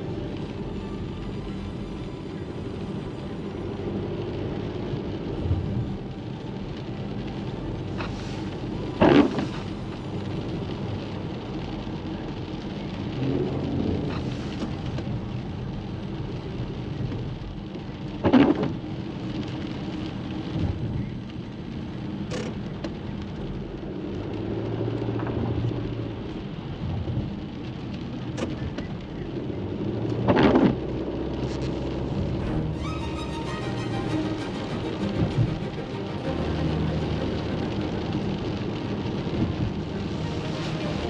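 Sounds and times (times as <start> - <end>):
steady rain: 0.0 - 41.0
traffic hum: 34.0 - 41.0.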